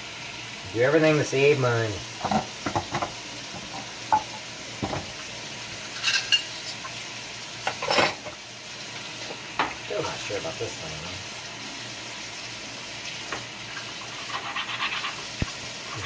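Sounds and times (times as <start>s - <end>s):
steady hiss: 0.0s - 16.0s
dishes and cutlery clinking: 5.9s - 6.8s, 7.6s - 8.4s
utensil scraping in a bowl: 13.8s - 16.0s.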